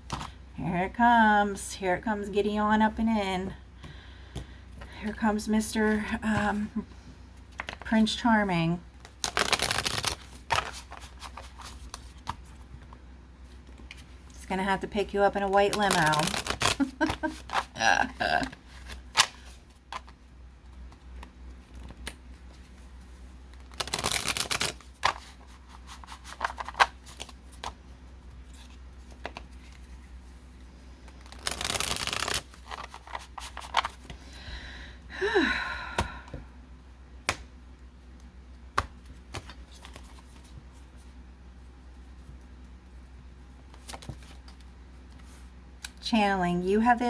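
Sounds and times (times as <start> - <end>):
cards being shuffled: 7.5 - 7.9, 9.0 - 14.2, 15.4 - 17.8, 18.5 - 27.8, 28.4 - 30.2, 31.0 - 34.2, 38.2 - 41.0, 43.6 - 45.4
cards tapping and clicking: 9.0 - 12.9, 15.7 - 17.7, 23.5 - 25.3, 31.2 - 34.2.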